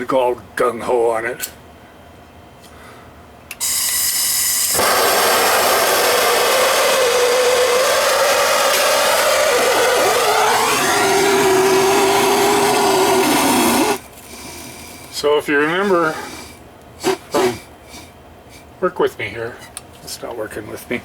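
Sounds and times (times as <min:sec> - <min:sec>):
torch humming tone: 0:03.6 - 0:15.1
gas torch hissing: 0:03.6 - 0:18.1.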